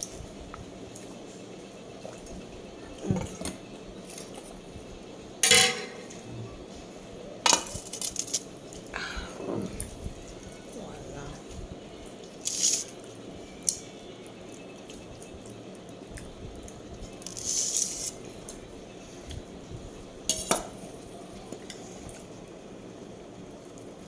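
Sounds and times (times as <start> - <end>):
cutlery and dishes clinking: 5.4 - 6.2.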